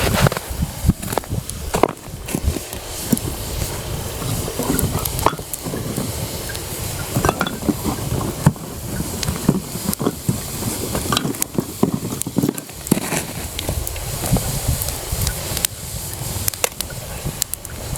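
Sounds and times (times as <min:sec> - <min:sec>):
campfire crackling: 0:00.0 - 0:17.9.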